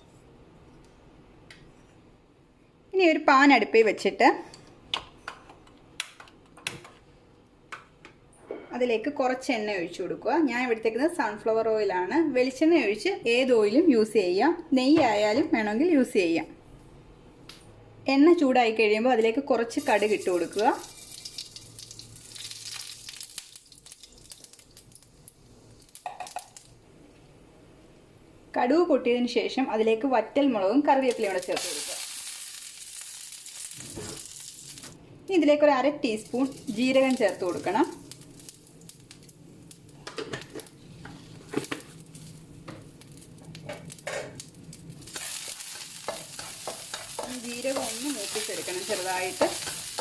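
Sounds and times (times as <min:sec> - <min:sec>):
faint oil sizzle: 0:19.8 - 0:26.8, 0:31.0 - 0:35.0, 0:36.0 - 0:50.0
mustard seeds popping in hot oil: 0:19.8 - 0:26.8, 0:31.0 - 0:35.0, 0:36.0 - 0:40.8, 0:41.5 - 0:50.0.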